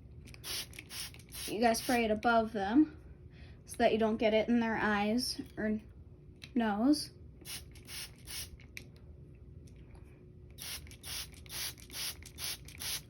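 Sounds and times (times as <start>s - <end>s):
spray bottle spritzing: 0.4s - 2.0s, 10.6s - 13.0s.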